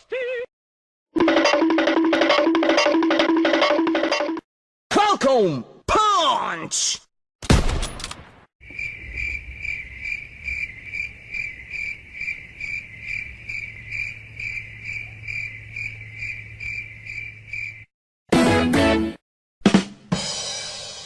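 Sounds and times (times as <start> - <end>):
crickets chirping: 8.6 - 17.9.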